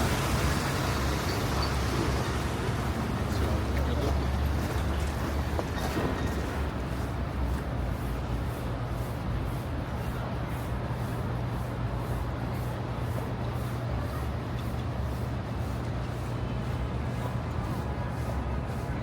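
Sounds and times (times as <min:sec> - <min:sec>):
vehicle engine humming: 0:00.0 - 0:08.4.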